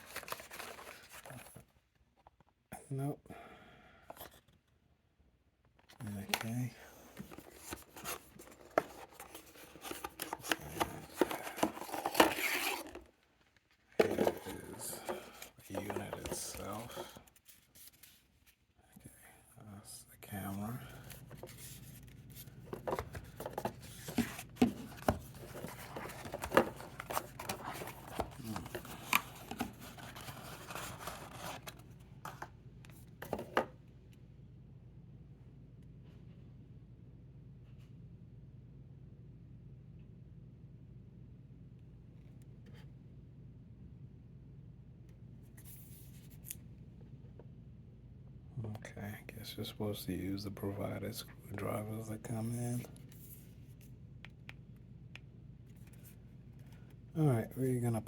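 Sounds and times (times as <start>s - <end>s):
packaging rustling: 0.0s - 1.6s, 7.2s - 18.3s, 21.0s - 32.5s.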